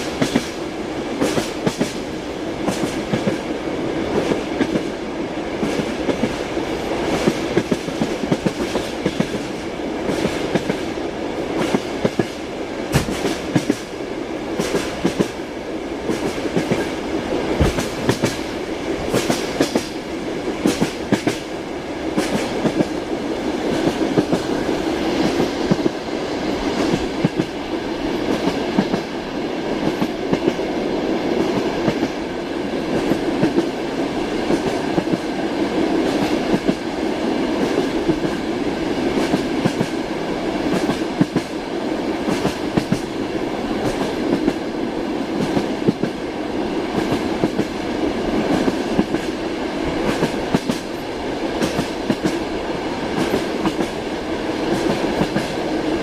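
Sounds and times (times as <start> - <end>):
train wheels clacking over rail joints: 0.0 - 0.6, 1.2 - 3.5, 5.6 - 10.8, 11.6 - 13.9, 14.6 - 15.4, 16.0 - 18.5, 19.1 - 20.0, 20.6 - 21.5, 22.1 - 23.0, 42.2 - 43.1, 50.0 - 52.5.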